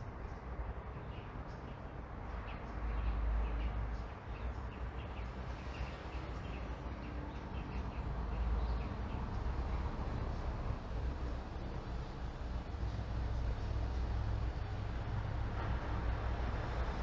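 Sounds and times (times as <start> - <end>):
distant traffic rumble: 6.0 - 17.0
small birds chirping: 7.6 - 15.5.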